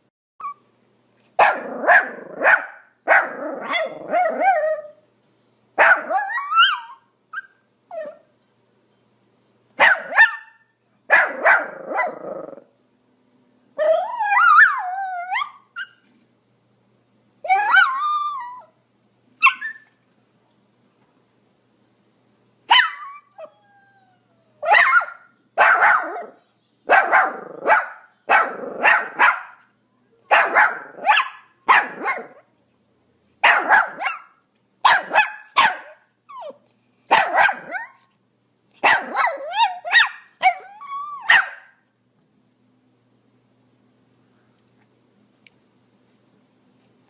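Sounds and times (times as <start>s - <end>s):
dog whining yelp: 0.4s - 0.7s, 1.5s - 5.0s, 5.8s - 8.3s, 13.8s - 16.2s, 17.5s - 18.8s, 19.4s - 21.2s, 22.7s - 29.2s, 34.9s - 36.6s, 37.2s - 38.1s, 38.8s - 41.7s, 44.2s - 44.9s
dog barking high-pitched: 1.4s - 4.6s, 5.8s - 7.0s, 9.8s - 12.2s, 22.7s - 23.2s, 24.6s - 29.7s, 30.3s - 32.4s, 33.4s - 36.1s, 37.1s - 38.0s, 38.8s - 41.8s.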